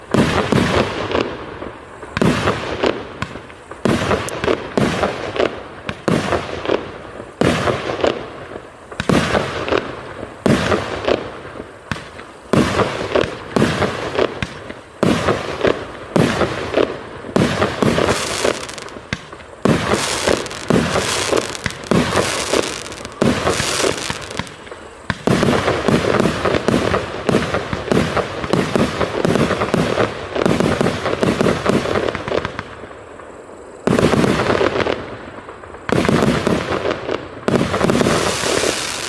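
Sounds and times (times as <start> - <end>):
fireworks cake bangs: 9.0 - 32.7, 37.5 - 39.0.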